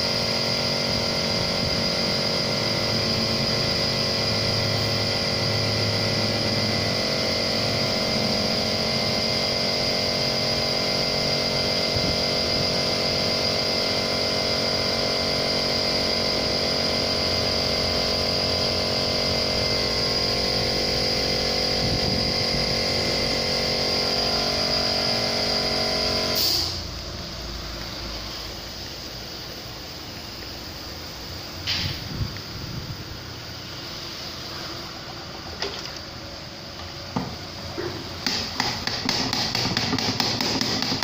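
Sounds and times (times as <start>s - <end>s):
small motor humming and whining: 0.0s - 26.8s.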